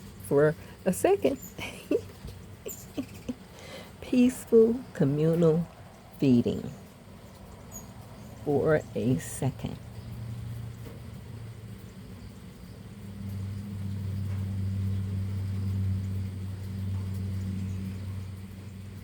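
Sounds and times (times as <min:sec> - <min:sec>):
low machine hum: 0:00.0 - 0:19.0.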